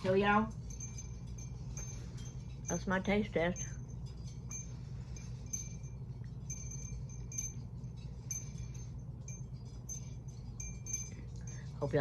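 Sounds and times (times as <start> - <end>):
steady low hum: 0.0 - 12.0
wind chimes tinkling: 0.0 - 12.0.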